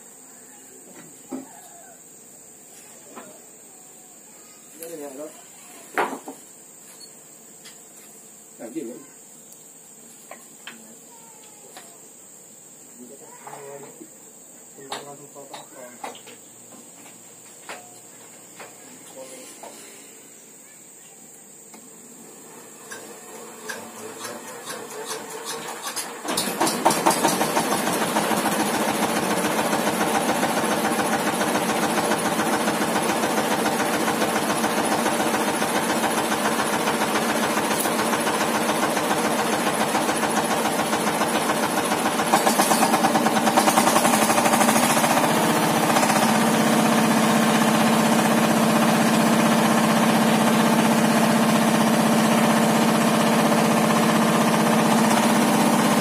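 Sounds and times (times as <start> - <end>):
diesel engine starting and running: 22.5 - 56.0.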